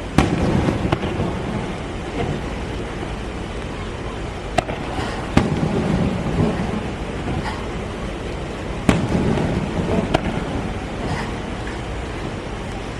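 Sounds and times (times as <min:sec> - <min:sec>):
sharp firework bangs: 0:00.0 - 0:02.7, 0:04.5 - 0:07.5, 0:08.8 - 0:11.0
low rumble of fireworks: 0:00.0 - 0:12.9.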